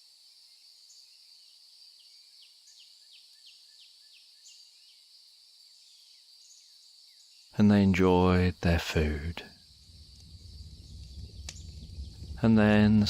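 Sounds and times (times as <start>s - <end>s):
high insect drone: 0.0s - 13.0s
bird falling chirps: 9.5s - 13.0s.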